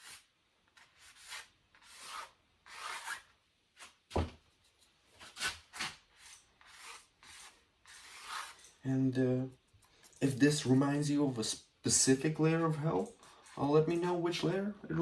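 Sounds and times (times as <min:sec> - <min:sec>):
brush rubbing on canvas: 0:06.2 - 0:08.6.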